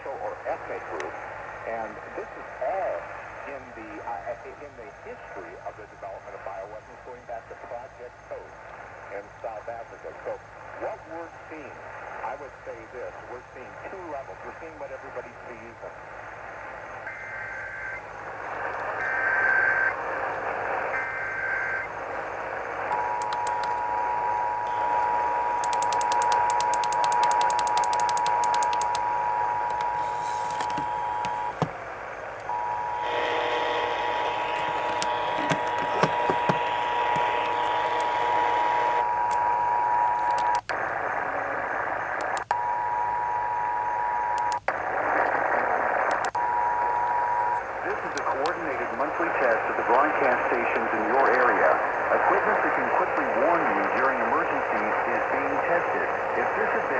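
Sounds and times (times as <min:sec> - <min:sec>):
radio static and hiss: 0:00.0 - 0:56.9
screeching data bursts: 0:17.0 - 0:50.3.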